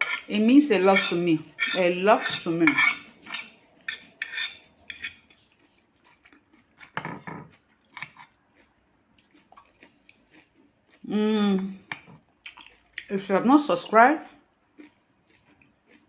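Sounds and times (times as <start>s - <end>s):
fork scraping salad bowl: 0.0s - 8.7s
crunchy chewing: 5.0s - 13.1s, 14.3s - 16.0s.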